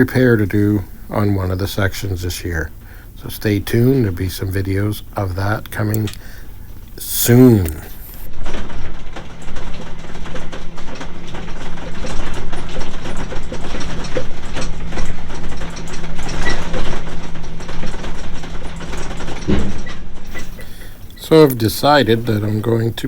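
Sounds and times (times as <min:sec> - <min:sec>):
tractor engine humming: 0:00.0 - 0:23.0
mechanical rattling and clanking: 0:08.3 - 0:22.8.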